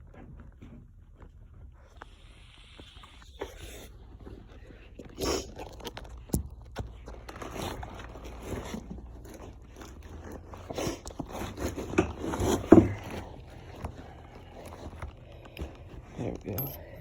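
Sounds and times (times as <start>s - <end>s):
knocks and rustles: 5.8s - 17.0s
metal tools scraping and clicking: 16.3s - 17.0s.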